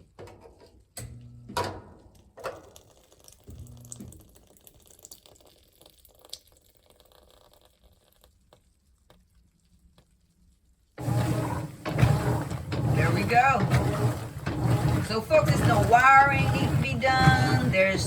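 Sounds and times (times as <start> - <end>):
water dripping and trickling: 2.1 - 11.0.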